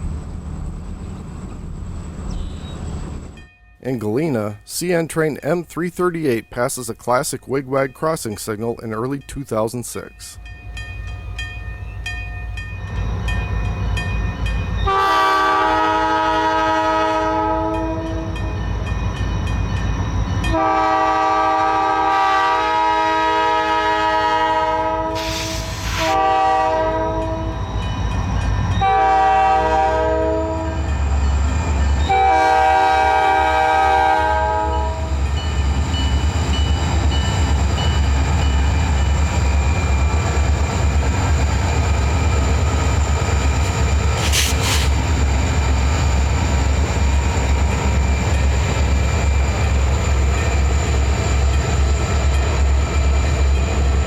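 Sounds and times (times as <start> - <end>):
diesel engine and train rumble: 0.0 - 54.0
locomotive air horn blasts: 14.8 - 18.4, 20.5 - 27.6, 28.8 - 30.9, 32.1 - 35.1.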